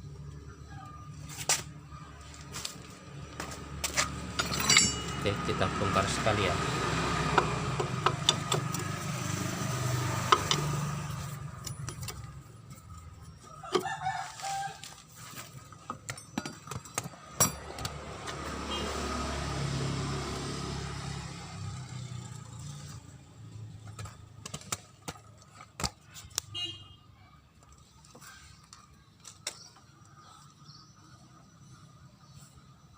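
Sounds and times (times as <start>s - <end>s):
low engine hum: 0.0s - 13.6s
metallic tool clicks and knocks: 4.3s - 5.2s, 7.4s - 8.9s, 10.3s - 10.8s
rooster crowing: 13.4s - 15.0s.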